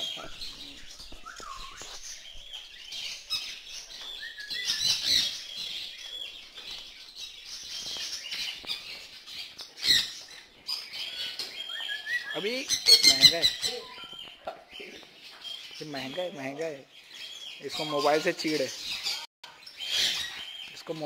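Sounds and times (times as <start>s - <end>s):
parrots chirping and chattering: 0.0s - 21.0s.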